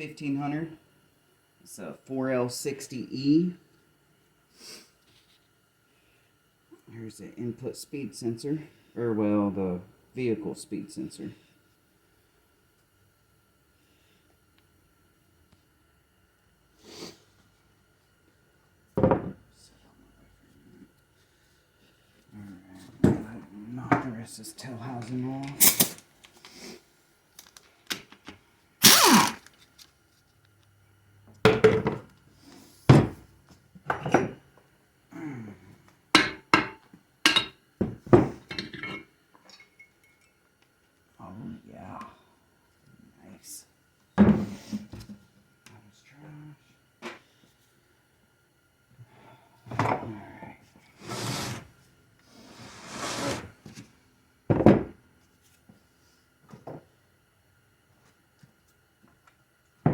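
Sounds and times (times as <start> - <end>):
metal parts scraping: 28.8 - 29.5.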